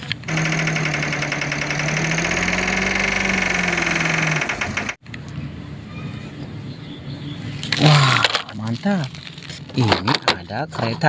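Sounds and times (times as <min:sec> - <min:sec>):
truck engine running: 0:00.0 - 0:05.2.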